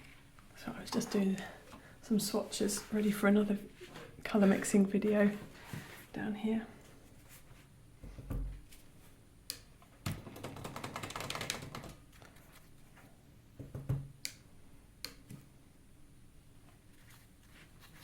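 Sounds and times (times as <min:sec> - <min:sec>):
rustling or scratching: 0:16.9 - 0:18.0.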